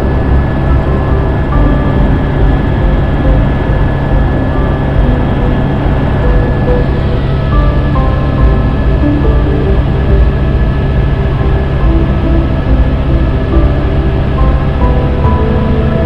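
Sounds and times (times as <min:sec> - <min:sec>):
helicopter rotor throb: 0:00.0 - 0:16.0
high whine: 0:00.0 - 0:16.0.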